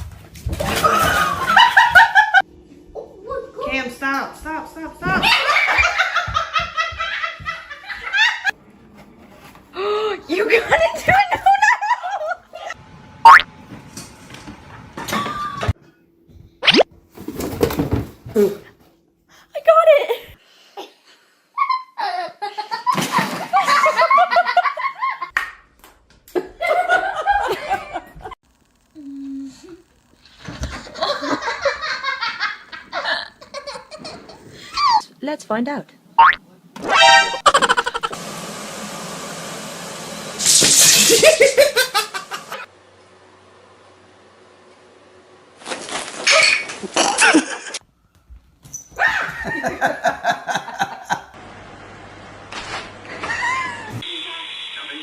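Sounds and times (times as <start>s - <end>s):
person laughing: 37.4s - 38.2s, 41.0s - 42.6s, 46.8s - 47.8s, 49.0s - 51.3s.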